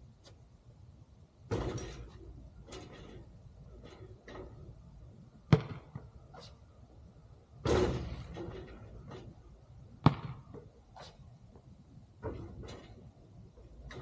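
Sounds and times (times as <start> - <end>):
basketball bouncing: 5.5 - 6.2, 10.0 - 10.8.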